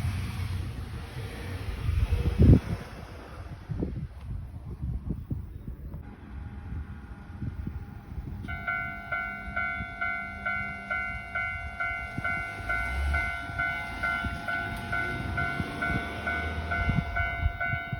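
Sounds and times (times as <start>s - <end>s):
wind rumble on microphone: 0.0s - 17.9s
crossing warning bell ringing: 6.5s - 17.9s.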